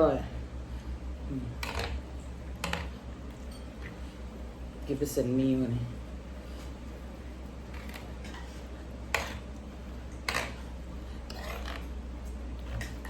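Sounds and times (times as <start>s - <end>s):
steady low hum: 0.0s - 13.0s
utensils clinking on bowl: 2.6s - 4.0s.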